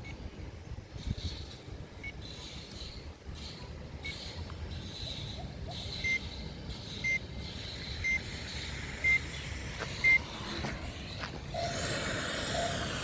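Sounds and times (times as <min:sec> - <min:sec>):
faint high whine: 0:00.0 - 0:13.0
rushing noise: 0:08.1 - 0:13.0.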